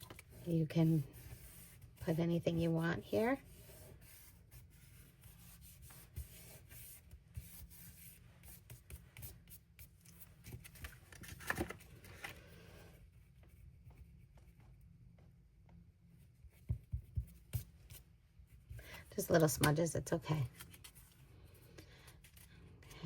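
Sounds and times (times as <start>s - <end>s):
scratching and rubbing of card: 0.0s - 12.3s.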